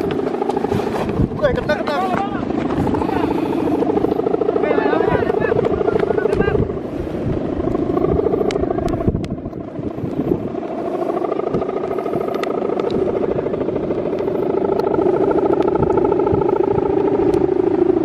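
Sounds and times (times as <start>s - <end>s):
kite hummer droning: 0.0s - 18.0s.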